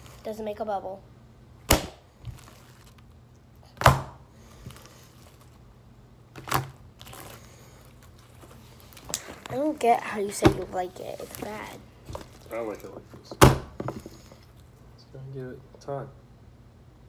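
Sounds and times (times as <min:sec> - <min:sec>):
slime snapping: 0:01.7 - 0:02.6.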